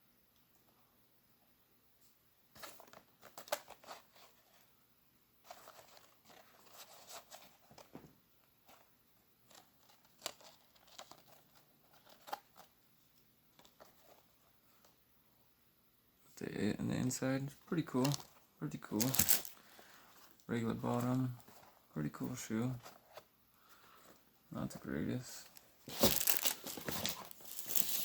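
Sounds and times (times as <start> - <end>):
packaging crinkling and rustling: 17.8 - 21.8, 25.4 - 28.0.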